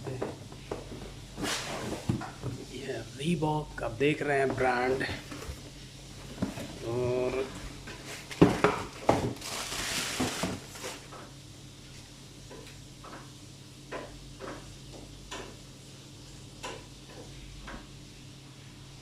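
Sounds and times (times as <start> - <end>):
packaging rustling: 9.0 - 11.1.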